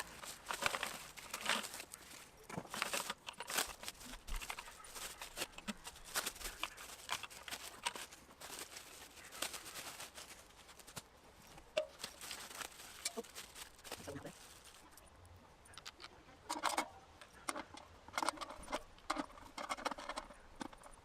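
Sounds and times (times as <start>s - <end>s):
packaging rustling and crinkling: 0.0s - 15.1s.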